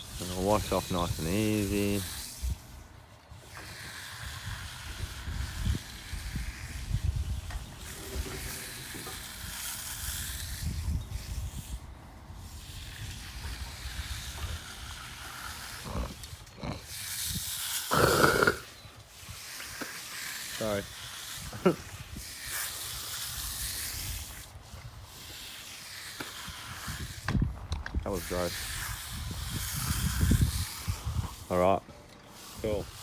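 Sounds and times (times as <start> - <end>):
person snorting throat-clearing: 15.8 - 17.0, 17.9 - 18.7.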